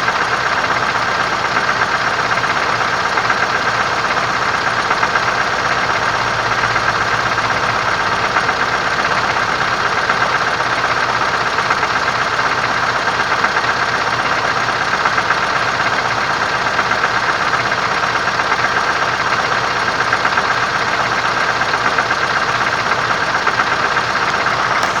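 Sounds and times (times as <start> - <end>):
truck diesel engine idling: 0.0 - 25.0
fast even knock: 24.7 - 25.0.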